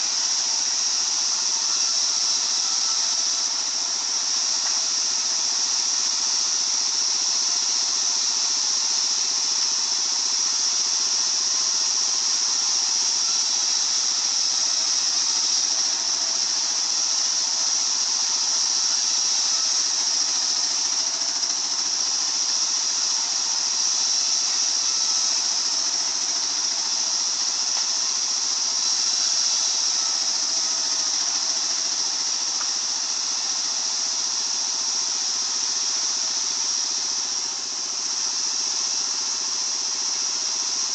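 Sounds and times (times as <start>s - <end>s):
circular saw whining: 12.8s - 38.0s.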